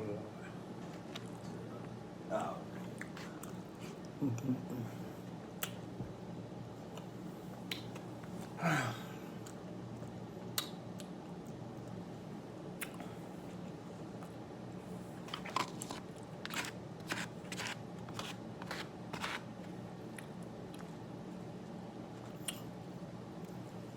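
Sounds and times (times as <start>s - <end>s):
low room hum: 0.0s - 23.9s.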